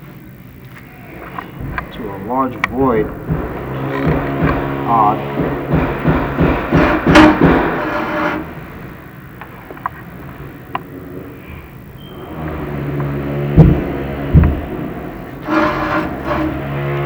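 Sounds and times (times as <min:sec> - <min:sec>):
low steady hum: 0:00.0 - 0:17.0
loud burst of noise: 0:00.4 - 0:17.0
thump: 0:13.6 - 0:14.8.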